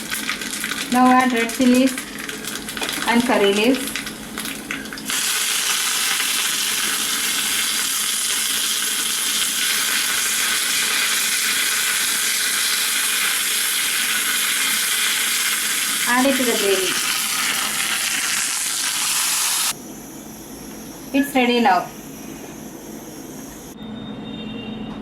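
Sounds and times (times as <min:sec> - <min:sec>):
spices sizzling in hot oil: 0:00.0 - 0:19.8.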